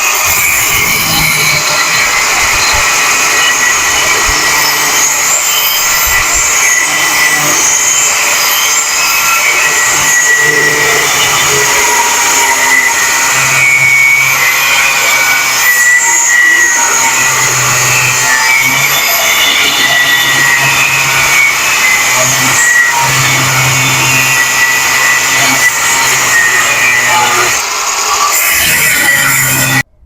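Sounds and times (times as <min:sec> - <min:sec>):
electric grinder on steel: 0:00.0 - 0:29.9.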